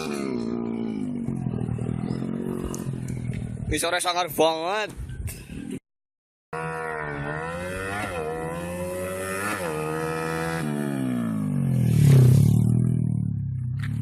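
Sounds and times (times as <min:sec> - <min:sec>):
motorcycle engine revving: 0:00.0 - 0:03.7, 0:06.5 - 0:14.0.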